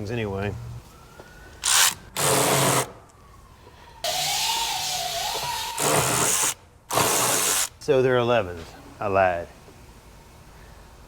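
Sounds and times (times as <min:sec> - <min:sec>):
power ratchet bursts: 0:04.1 - 0:07.8.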